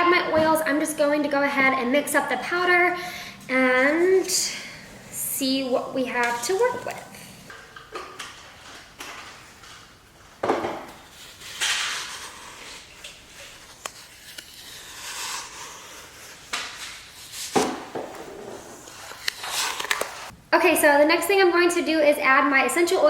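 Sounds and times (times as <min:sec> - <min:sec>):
powder being stirred: 0:00.6 - 0:09.9.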